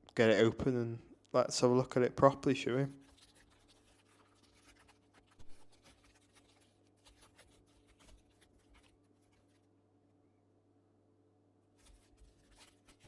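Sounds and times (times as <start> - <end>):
low steady hum: 0.0 - 13.0
plastic packaging rustling: 2.9 - 9.7, 11.7 - 13.0.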